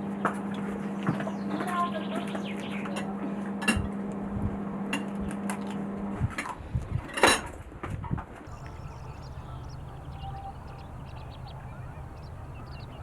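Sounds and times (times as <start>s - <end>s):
steady low hum: 8.5s - 13.0s.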